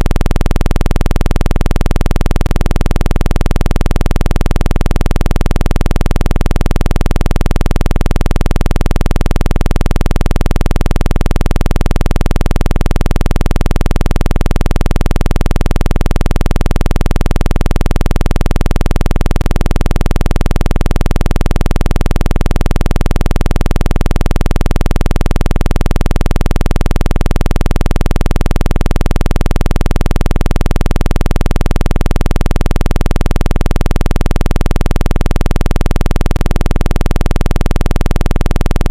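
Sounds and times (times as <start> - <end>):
pulsing synthesized low buzz: 0.0 - 38.9.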